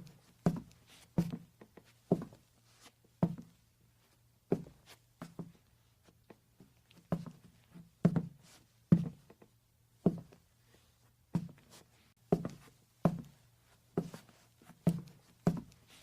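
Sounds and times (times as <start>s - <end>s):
footsteps on wooden floor: 0.4s - 2.4s, 6.6s - 9.4s, 12.3s - 13.3s.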